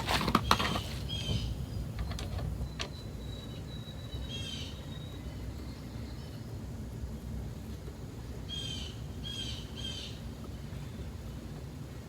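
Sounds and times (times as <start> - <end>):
birds chirping: 0.3 - 6.4.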